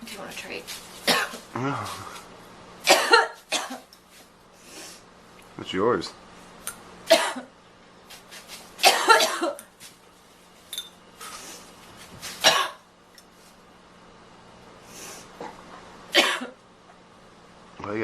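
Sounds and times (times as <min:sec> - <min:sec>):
girl coughing: 0:01.1 - 0:02.0, 0:02.8 - 0:03.9, 0:07.1 - 0:07.5, 0:08.8 - 0:09.6, 0:12.4 - 0:12.8, 0:16.1 - 0:16.6.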